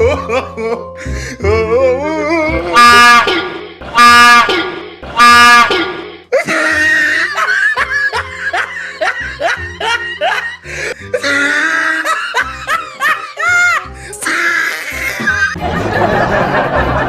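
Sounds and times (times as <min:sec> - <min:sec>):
comic background music: 0:00.0 - 0:17.0
laughing sound effect: 0:02.7 - 0:10.6.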